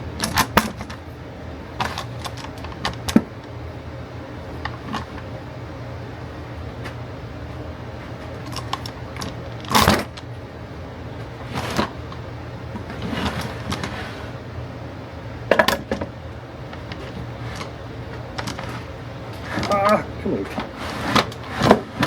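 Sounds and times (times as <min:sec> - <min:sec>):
steady low hum: 0:00.0 - 0:22.0
objects clattering on a bench: 0:15.5 - 0:16.1, 0:20.5 - 0:22.0.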